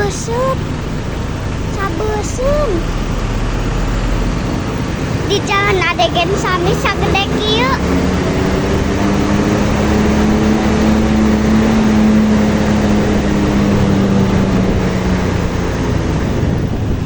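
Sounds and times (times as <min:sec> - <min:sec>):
bus engine drone: 0:00.0 - 0:17.0
tyre and road noise: 0:00.0 - 0:17.0.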